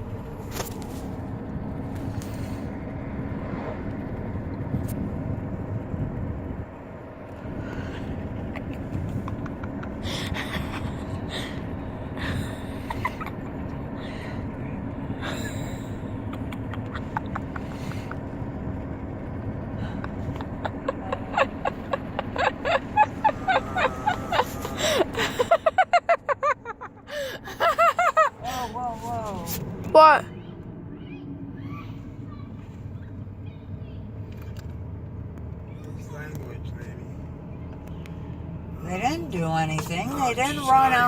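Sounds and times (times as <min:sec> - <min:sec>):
road and engine noise in car: 0:00.0 - 0:41.0
short high-pitched cries: 0:23.2 - 0:25.2.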